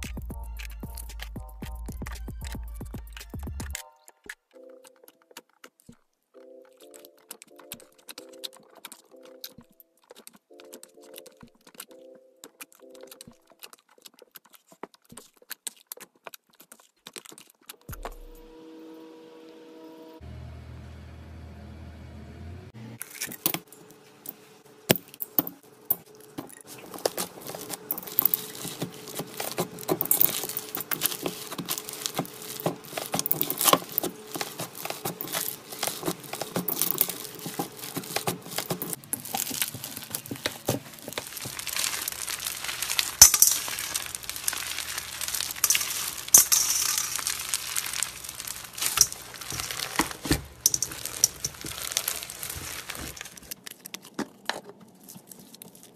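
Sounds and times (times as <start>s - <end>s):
hands squeezing slime: 26.7s - 53.6s.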